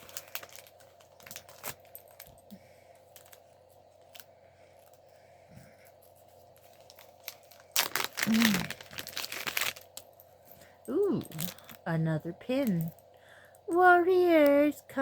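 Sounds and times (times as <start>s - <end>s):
plastic packaging torn open: 0.0s - 2.0s, 6.8s - 10.1s, 11.2s - 11.8s.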